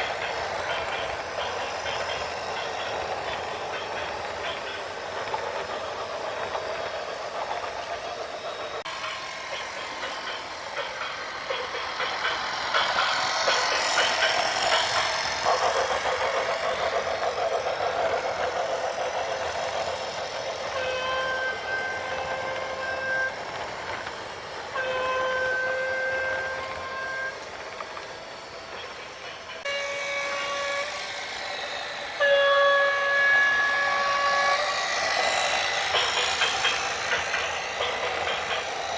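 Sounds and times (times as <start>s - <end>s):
horn blasts: 24.8s - 27.4s, 29.6s - 31.0s, 32.2s - 34.6s.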